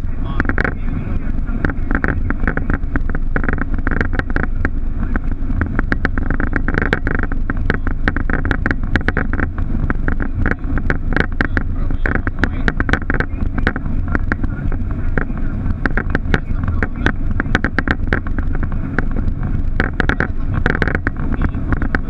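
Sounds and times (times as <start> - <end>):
loud flight deck drone: 0.0 - 22.0
rattles and knocks: 1.6 - 22.0.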